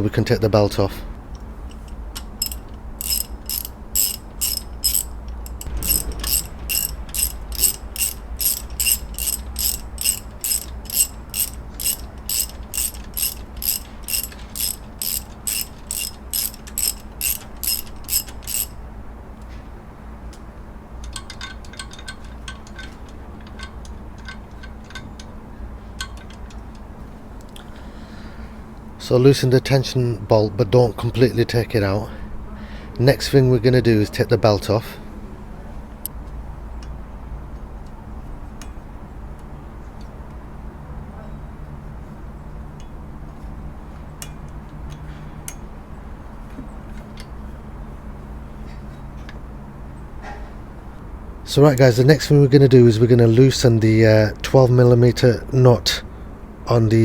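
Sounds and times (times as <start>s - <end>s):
ratchet wrench clicking: 1.7s - 18.8s.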